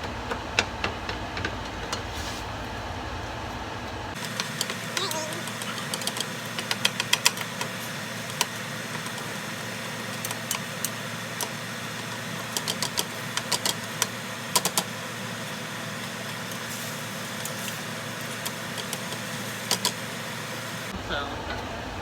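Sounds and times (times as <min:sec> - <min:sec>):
meat and onion sizzling: 0:14.1 - 0:20.9.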